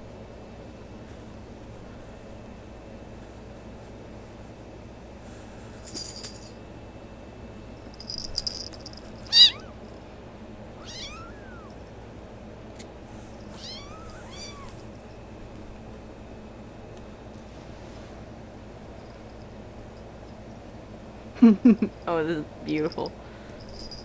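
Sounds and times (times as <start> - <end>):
kittens meowing: 9.2 - 9.8, 10.8 - 11.9, 13.5 - 14.9.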